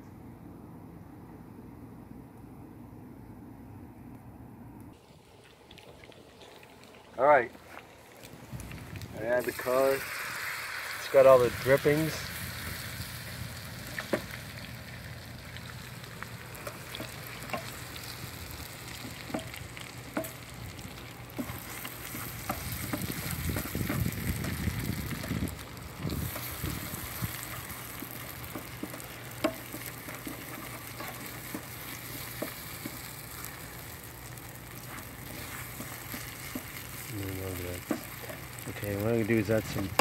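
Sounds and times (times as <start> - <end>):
meat sizzling in a frying pan: 7.9 - 40.0
gravy being stirred: 15.5 - 40.0
utensil clicking against pan: 27.2 - 33.0.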